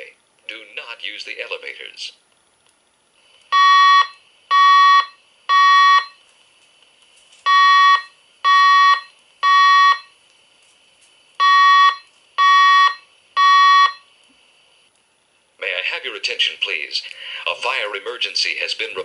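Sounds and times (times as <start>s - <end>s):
fire alarm beeps: 3.5s - 6.2s, 7.5s - 10.2s, 11.4s - 14.1s.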